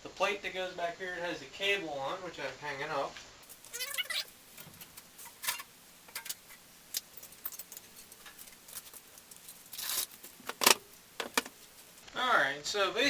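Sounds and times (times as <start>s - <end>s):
small metal parts clinking: 3.5s - 11.5s.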